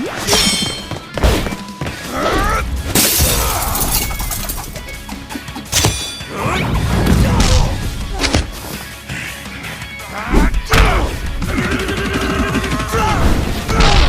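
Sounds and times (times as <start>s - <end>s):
music: 0.0s - 14.0s
glass shattering crash: 3.0s - 4.7s, 5.7s - 6.4s.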